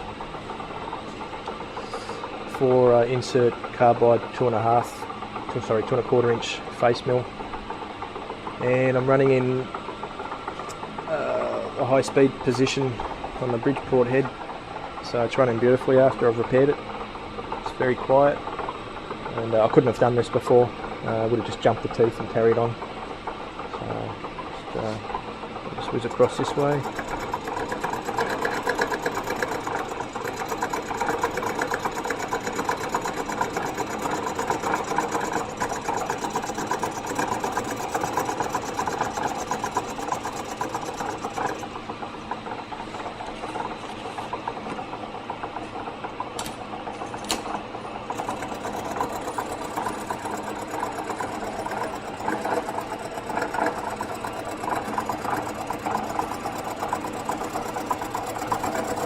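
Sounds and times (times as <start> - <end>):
milling machine cutting metal: 25.6 - 59.0.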